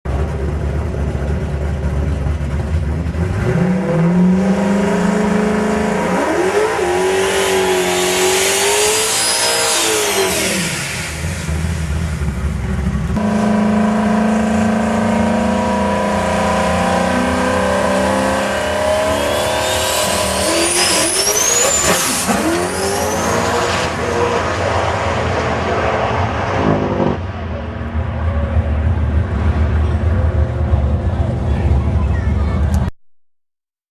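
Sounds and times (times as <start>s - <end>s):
car engine revving: 0.2s - 32.3s
turbo whistle: 7.5s - 10.9s, 18.6s - 23.8s.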